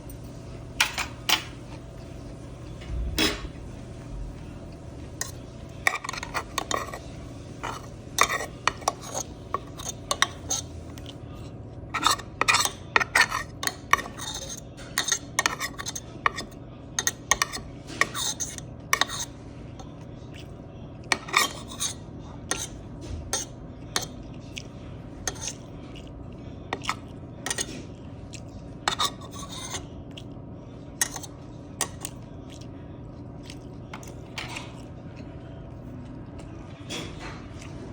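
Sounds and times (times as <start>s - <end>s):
cutlery scraping plastic container: 5.2s - 10.6s, 12.0s - 19.3s, 28.9s - 29.8s.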